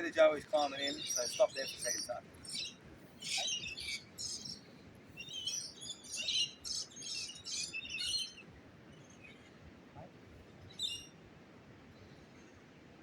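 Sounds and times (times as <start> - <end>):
birds chirping: 0.0 - 8.4
faint outdoor background: 0.0 - 13.0.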